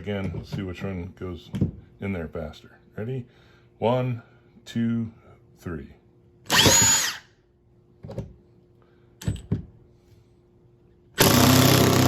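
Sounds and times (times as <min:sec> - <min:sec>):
impact driver motor whining: 0:06.5 - 0:07.3, 0:11.2 - 0:12.0.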